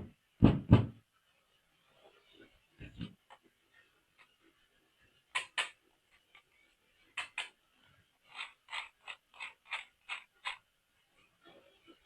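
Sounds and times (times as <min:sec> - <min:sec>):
plastic parts clicking: 0:05.3 - 0:06.5, 0:07.1 - 0:07.6, 0:08.3 - 0:10.6.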